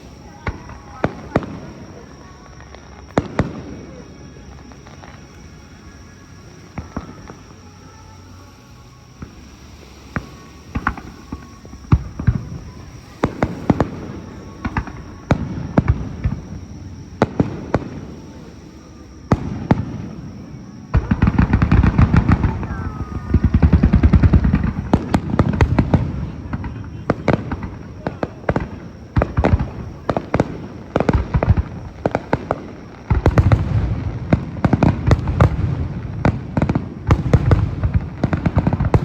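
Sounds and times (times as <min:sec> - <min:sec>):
rapid firework bangs and crackling: 0:00.0 - 0:08.4, 0:09.1 - 0:39.0
firework shells booming: 0:19.2 - 0:39.0.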